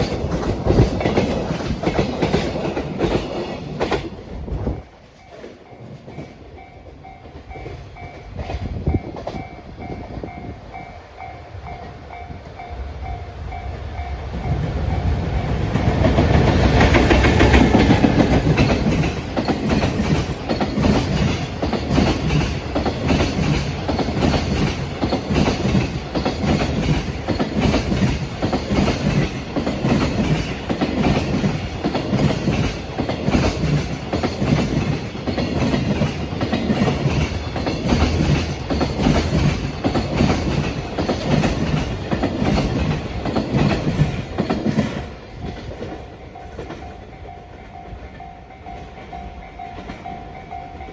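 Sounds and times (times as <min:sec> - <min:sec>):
electric locomotive passing: 0:00.0 - 0:50.9
level crossing warning bell: 0:04.9 - 0:16.2, 0:45.6 - 0:50.9
wagon wheels clattering over rail joints: 0:15.8 - 0:46.9.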